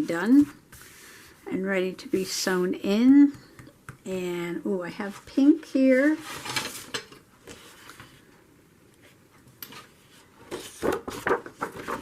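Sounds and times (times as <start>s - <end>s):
paper rustling and crinkling: 9.7s - 12.0s.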